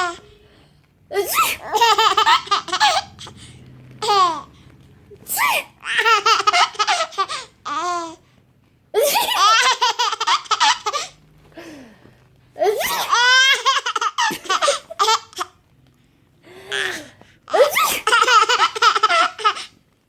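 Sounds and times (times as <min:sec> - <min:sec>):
baby laughing: 0:01.1 - 0:03.4, 0:04.0 - 0:04.5, 0:05.4 - 0:08.2, 0:09.0 - 0:11.2, 0:12.6 - 0:15.6, 0:16.7 - 0:19.8.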